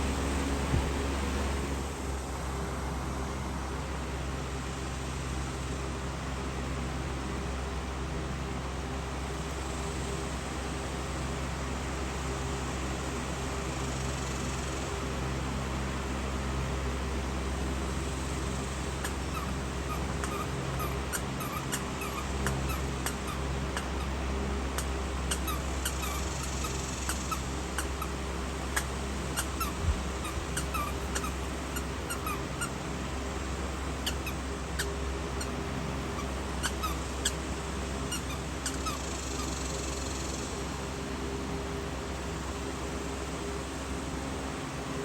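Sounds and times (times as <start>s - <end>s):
steady low hum: 0.0s - 5.0s, 9.1s - 45.0s
puppies squeaking and whimpering: 18.9s - 32.9s, 34.0s - 39.7s.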